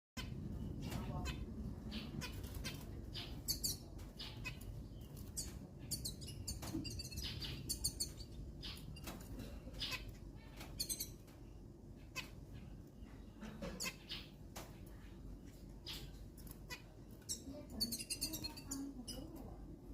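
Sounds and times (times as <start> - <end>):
finches calling: 0.2 - 11.3, 15.5 - 19.8
steady low rumble: 0.2 - 19.9.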